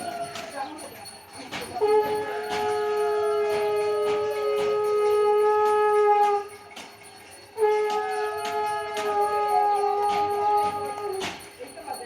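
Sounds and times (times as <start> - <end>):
conch shell blown: 1.7 - 6.7, 7.6 - 11.4.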